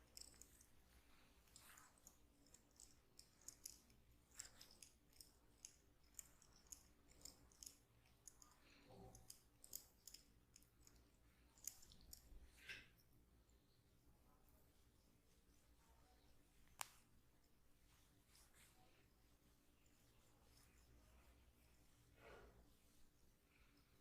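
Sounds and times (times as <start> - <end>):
soft rubbing swishes: 14.4 - 24.0.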